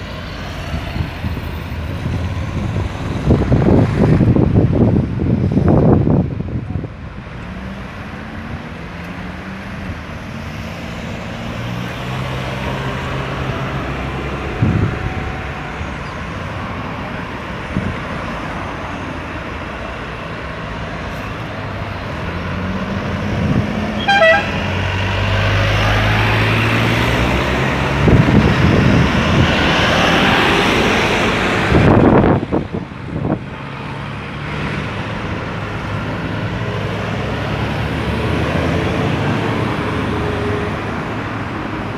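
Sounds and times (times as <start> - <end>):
vehicles driving past: 0.0 - 41.9
car horn toot: 24.0 - 24.6.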